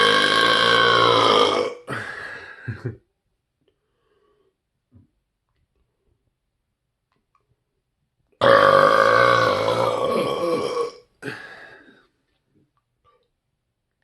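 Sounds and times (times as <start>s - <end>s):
man burping: 0.0s - 3.0s, 8.4s - 11.9s.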